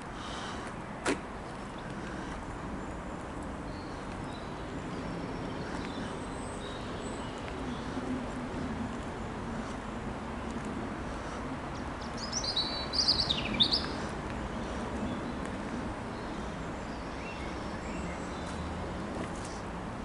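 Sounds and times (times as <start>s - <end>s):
songbird twittering: 12.0s - 14.0s.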